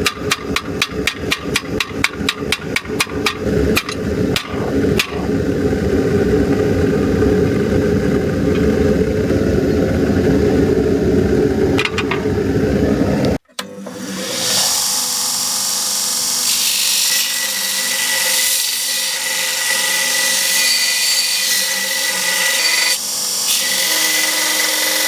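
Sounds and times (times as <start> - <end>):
rapid hammer blows: 0.0 - 5.4
machine motor humming: 0.0 - 16.2.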